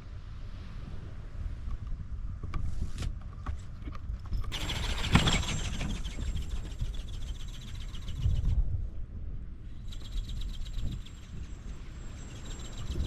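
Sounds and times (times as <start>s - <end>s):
wind buffeting microphone: 0.0s - 13.0s
flapping wings rhythmic beats: 4.5s - 8.6s, 9.8s - 13.0s.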